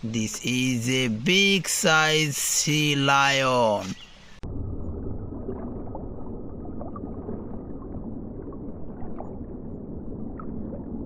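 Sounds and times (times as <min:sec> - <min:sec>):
churning water-like noise: 0:04.4 - 0:11.0.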